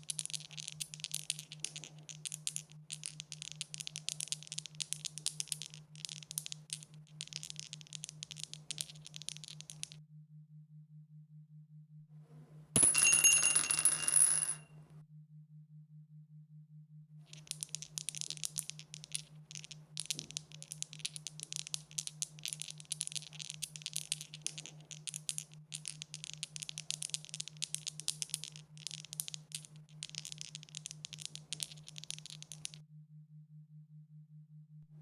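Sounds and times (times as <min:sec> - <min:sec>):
dice rattling: 0:00.0 - 0:10.0, 0:12.8 - 0:14.6, 0:17.3 - 0:32.8.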